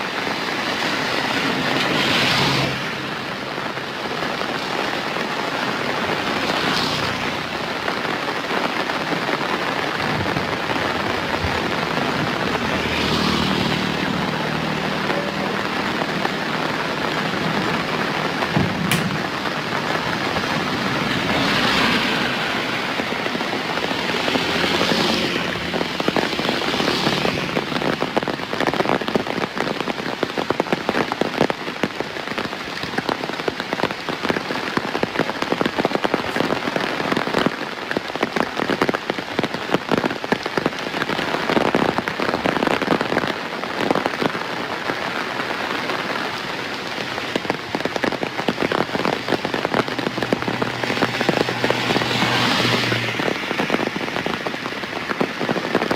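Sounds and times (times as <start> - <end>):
steady rain patter: 0.0 - 55.9.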